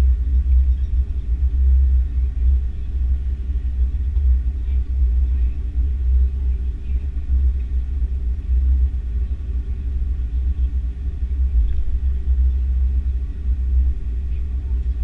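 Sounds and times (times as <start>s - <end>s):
airliner low rumble: 0.0s - 15.0s
faint steady tones: 0.0s - 15.0s.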